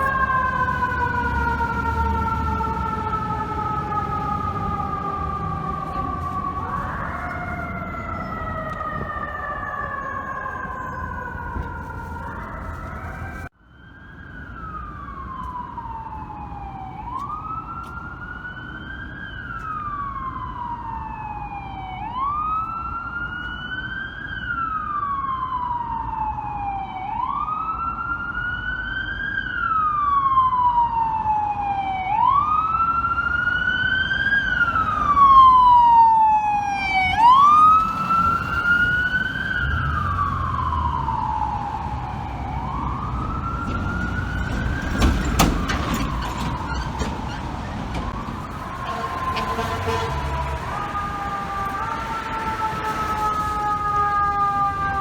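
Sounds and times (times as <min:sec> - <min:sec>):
second higher siren: 0:00.0 - 0:13.6, 0:29.8 - 0:47.1, 0:47.8 - 0:55.0
fire truck siren wailing: 0:00.0 - 0:55.0
low traffic rumble: 0:00.0 - 0:55.0.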